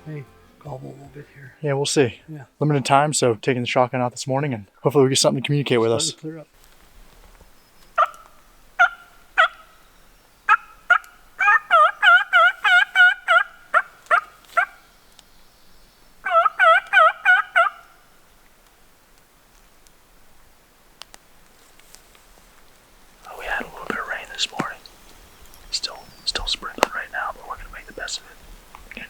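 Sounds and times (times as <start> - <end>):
turkey hen yelping and clucking: 8.0 - 9.8, 10.5 - 14.8, 16.2 - 18.0.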